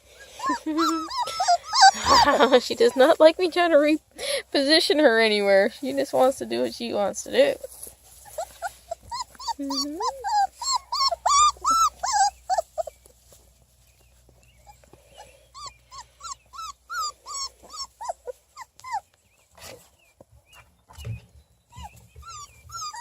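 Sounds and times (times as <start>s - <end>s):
puppies whining: 0.1s - 3.5s, 7.5s - 13.4s, 14.0s - 23.0s.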